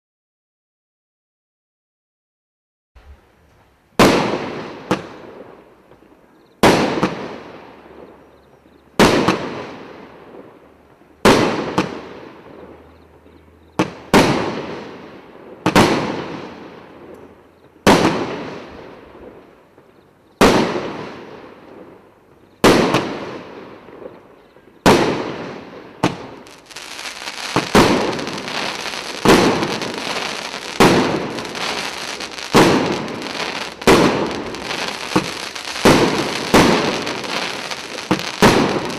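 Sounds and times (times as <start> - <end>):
firework bangs with echo: 13.8 - 14.9, 17.9 - 18.7, 24.8 - 38.9
firework crackling: 24.9 - 38.9.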